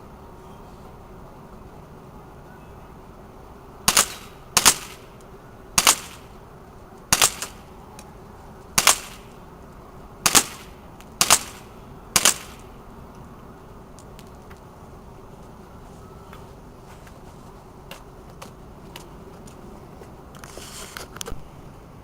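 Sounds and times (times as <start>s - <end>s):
pistol slide clack: 3.9s - 5.0s
airsoft pistol shots: 3.9s - 5.1s, 5.8s - 6.3s, 7.1s - 7.7s, 8.8s - 9.4s, 10.2s - 12.7s.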